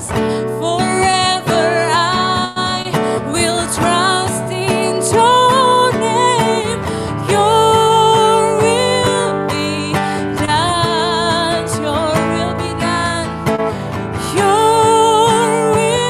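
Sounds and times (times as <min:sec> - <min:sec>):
acoustic guitar: 0:00.0 - 0:16.0.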